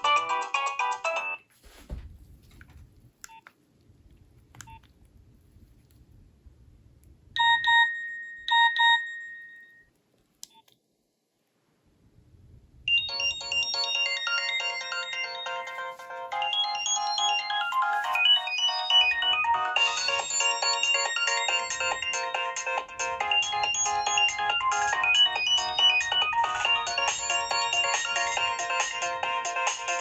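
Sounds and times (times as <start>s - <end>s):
polyphonic phone ringtone melody: 0.0s - 1.4s, 7.4s - 9.8s, 12.9s - 30.0s.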